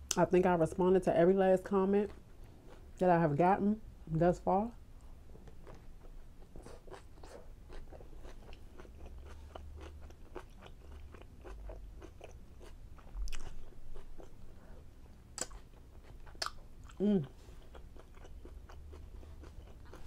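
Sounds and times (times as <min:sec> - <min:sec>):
person chewing: 0:05.4 - 0:20.0.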